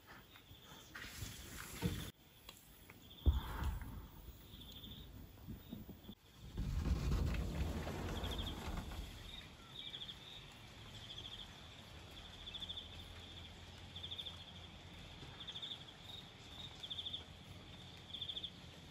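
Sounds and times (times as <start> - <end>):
insects chirping in trills: 3.0 - 6.2.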